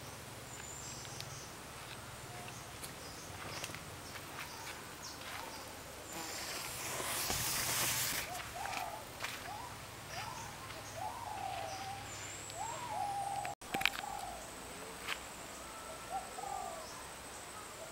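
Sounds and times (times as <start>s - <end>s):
insects: 0.0s - 17.9s
loud hiss: 6.1s - 8.4s.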